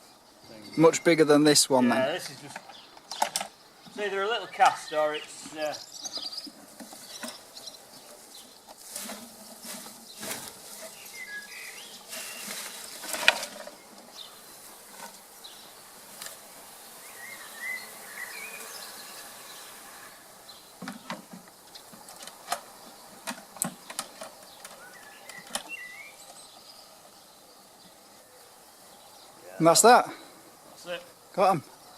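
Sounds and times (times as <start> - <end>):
bird chirps: 0.0 - 1.3, 2.1 - 8.6, 9.4 - 14.7, 16.8 - 22.1, 23.8 - 29.6
knocks and rustling: 5.4 - 11.1, 12.0 - 14.1, 20.8 - 25.8.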